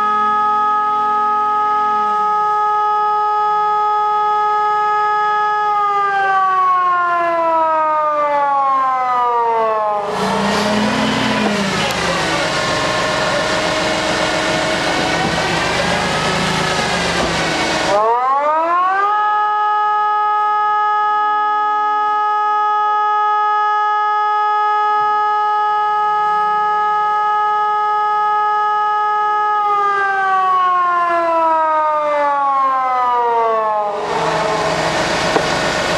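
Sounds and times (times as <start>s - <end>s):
electronic siren wailing: 0.0s - 35.9s
loud rushing noise: 10.0s - 18.0s, 33.9s - 35.9s
steady rushing noise: 34.0s - 35.9s.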